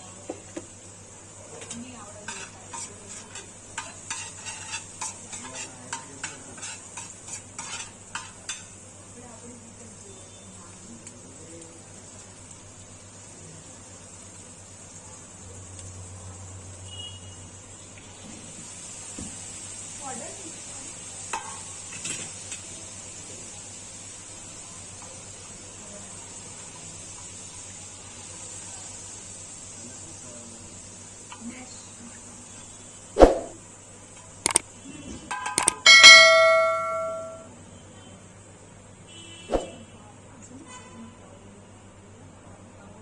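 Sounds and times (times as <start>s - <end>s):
egg frying on hot griddle: 0.0s - 39.5s, 40.2s - 43.0s
sizzling hiss: 0.0s - 40.6s
metal spatula scraping griddle: 1.6s - 8.8s, 21.3s - 22.7s.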